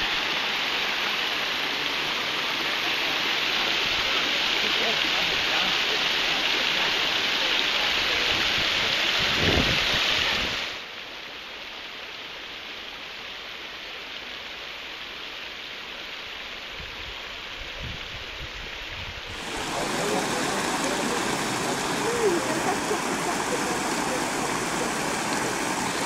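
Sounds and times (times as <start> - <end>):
waterfall rushing: 0.0 - 10.9, 19.3 - 26.0.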